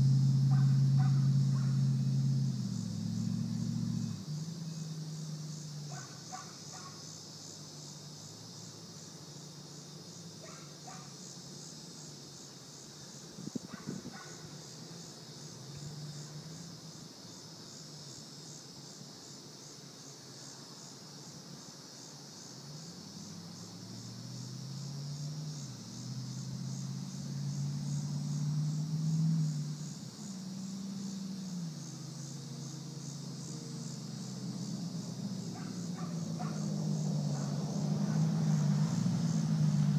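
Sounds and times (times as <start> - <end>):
car exhaust rumble: 0.0 - 9.1, 22.7 - 39.9
crickets chirping: 0.0 - 39.9.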